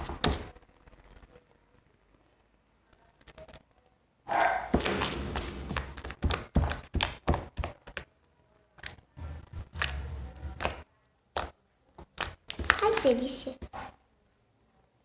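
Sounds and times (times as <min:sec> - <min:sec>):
slime squelching: 0:04.3 - 0:08.0, 0:08.8 - 0:13.7.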